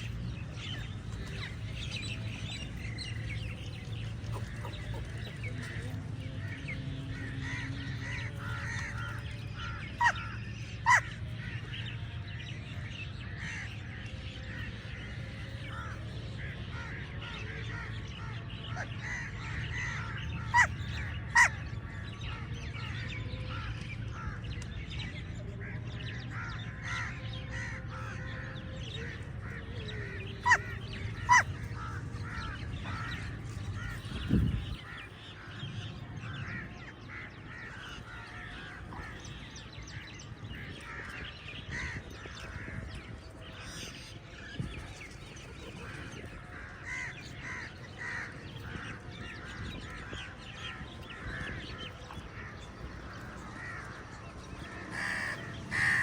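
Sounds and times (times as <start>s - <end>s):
crows cawing: 19.0s - 20.7s, 21.3s - 21.5s, 30.4s - 33.1s, 46.8s - 48.2s, 54.8s - 56.0s.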